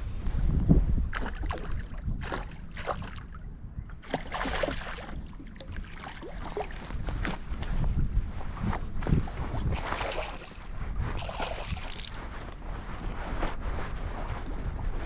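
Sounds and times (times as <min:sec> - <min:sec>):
wind rumble on microphone: 0:00.0 - 0:15.0
water splashing and dripping: 0:04.0 - 0:06.9.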